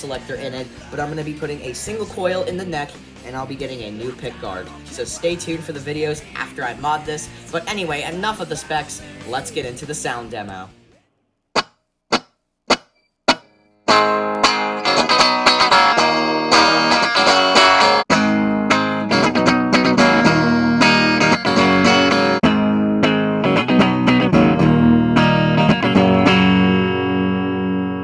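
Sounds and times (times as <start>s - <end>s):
electric guitar strumming chords: 12.7s - 28.0s.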